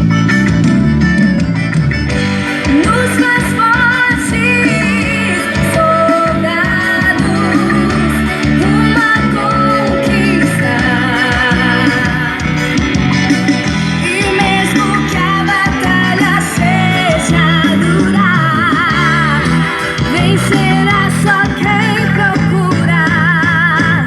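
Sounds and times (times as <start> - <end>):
guitar bass and beat: 0.0 - 24.0
person singing: 2.6 - 24.0.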